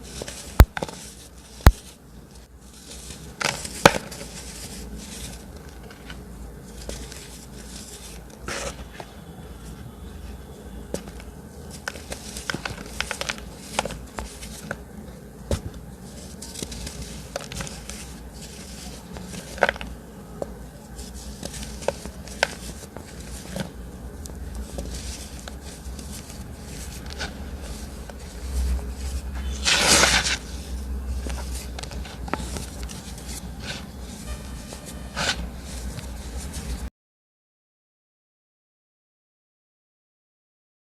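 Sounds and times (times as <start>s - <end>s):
chalk crunching: 20.9s - 36.9s.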